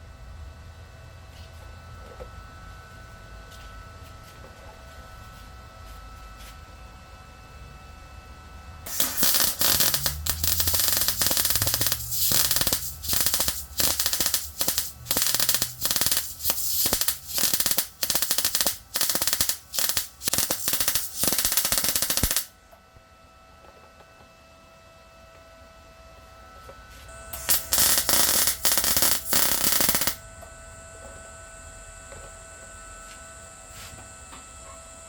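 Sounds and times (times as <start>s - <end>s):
welding arc crackling: 8.9s - 22.5s, 27.3s - 30.2s.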